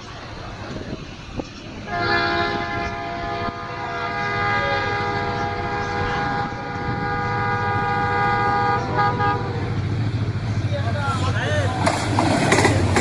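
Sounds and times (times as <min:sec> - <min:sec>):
train rumbling: 0:00.0 - 0:13.0
train horn blast: 0:01.8 - 0:09.9.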